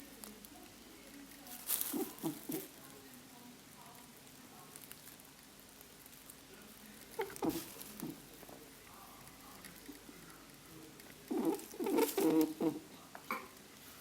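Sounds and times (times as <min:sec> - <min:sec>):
rabbit grunting: 0:01.6 - 0:02.8, 0:07.0 - 0:13.0.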